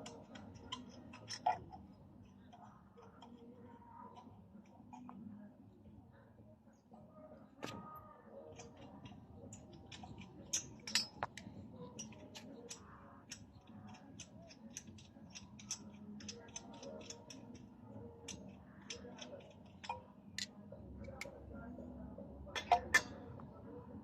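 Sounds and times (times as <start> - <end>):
metallic clicks and clinks: 8.5 - 20.5.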